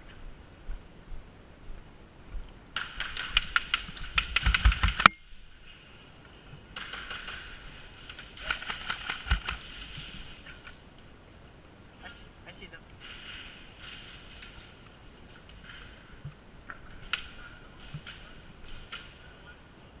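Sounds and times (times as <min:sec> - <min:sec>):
airsoft gun rapid bursts: 0:02.8 - 0:05.1, 0:08.4 - 0:09.8.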